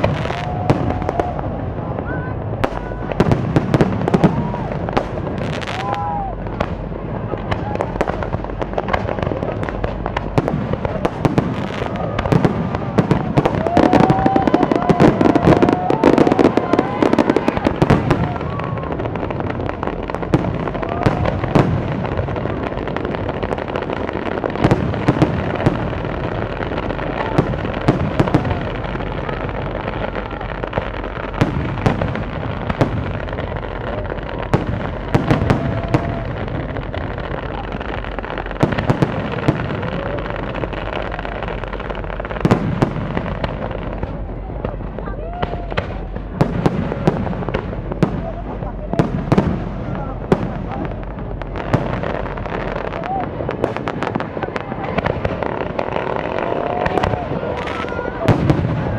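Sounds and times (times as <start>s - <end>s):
fireworks bangs and crackling: 0.0s - 58.9s.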